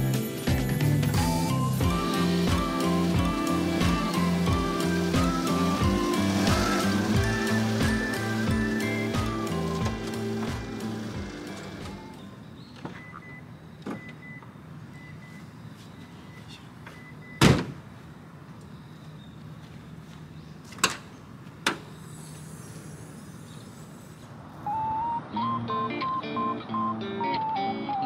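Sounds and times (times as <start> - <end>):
loud thump: 17.4 - 17.8.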